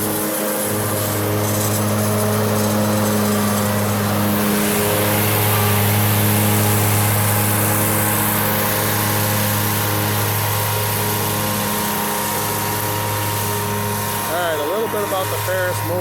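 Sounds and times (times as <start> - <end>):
riding mower engine running: 0.0 - 16.0.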